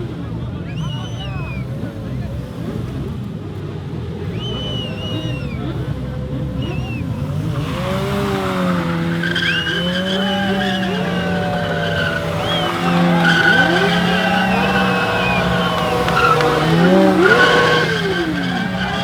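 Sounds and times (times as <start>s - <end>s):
motorcycle engine at high revs: 5.2s - 19.0s
tyre squealing: 7.6s - 19.0s.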